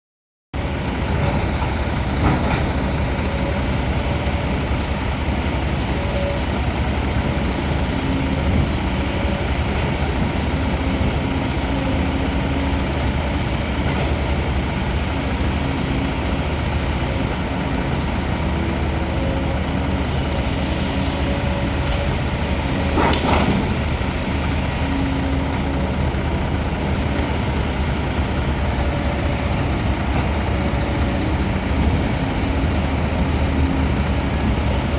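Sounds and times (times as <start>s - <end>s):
excavator diesel engine: 0.6s - 34.9s.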